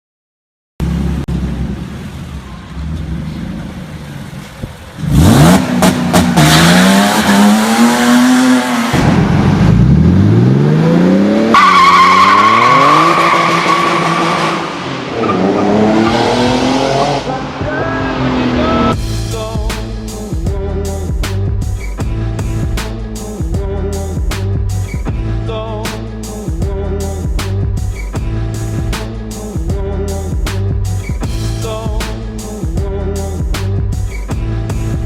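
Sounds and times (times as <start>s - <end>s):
car engine accelerating: 0.8s - 19.0s.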